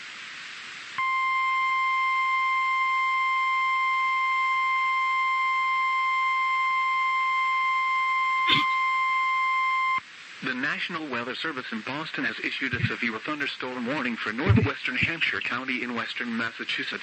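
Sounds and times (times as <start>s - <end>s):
static hiss: 0.0s - 9.1s, 9.9s - 17.0s.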